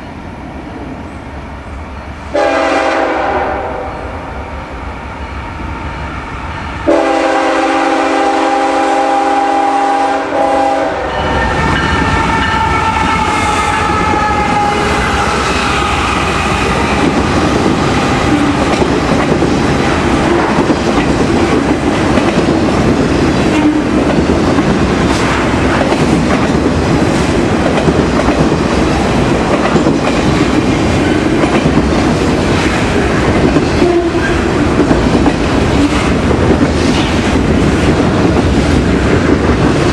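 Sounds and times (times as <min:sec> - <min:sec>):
train rumbling past: 0:00.0 - 0:39.9
locomotive air horn chord: 0:02.3 - 0:04.0, 0:06.8 - 0:16.6
wheels clacking over rail joints: 0:16.8 - 0:39.9.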